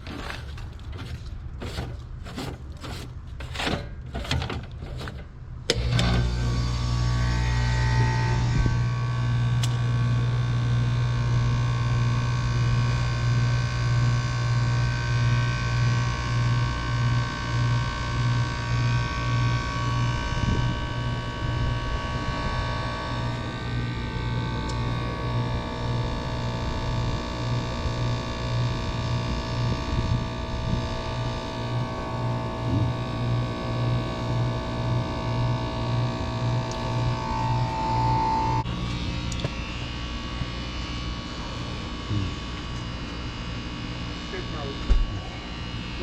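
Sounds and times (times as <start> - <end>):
heat pump humming: 0.0 - 46.0.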